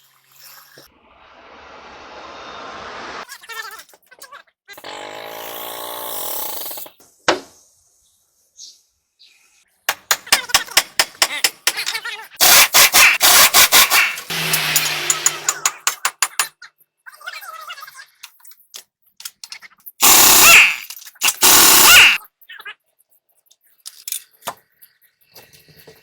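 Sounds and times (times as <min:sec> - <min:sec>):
ratchet clicking and rattling: 0:10.6 - 0:16.5, 0:20.0 - 0:22.2
short motor whirring: 0:12.4 - 0:15.8, 0:20.0 - 0:22.2.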